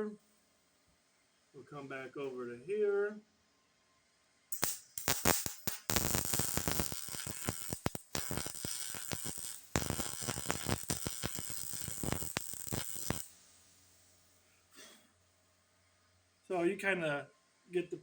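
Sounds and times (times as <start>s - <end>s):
welding arc crackling: 4.5s - 13.4s.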